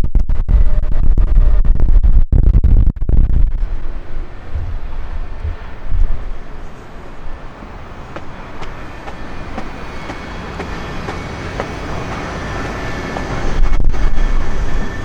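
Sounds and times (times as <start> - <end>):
train wheels rolling on track: 3.6 - 15.0
thin high wheel squeal: 3.7 - 15.0
wheels clicking over rail joints: 3.7 - 15.0.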